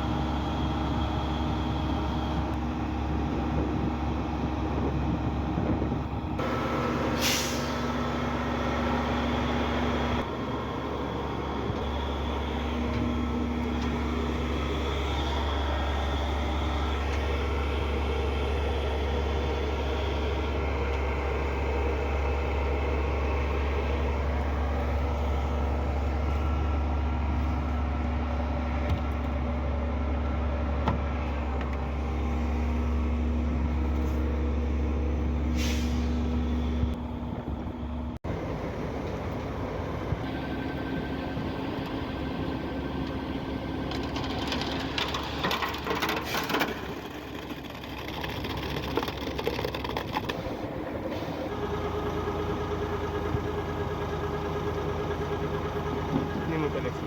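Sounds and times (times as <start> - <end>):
diesel truck engine humming: 0.0 - 57.0
short air hiss: 7.1 - 7.9.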